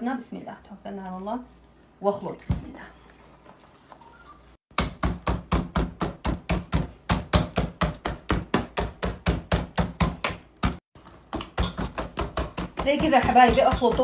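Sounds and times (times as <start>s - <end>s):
dough slapping in a bowl: 4.7s - 14.0s.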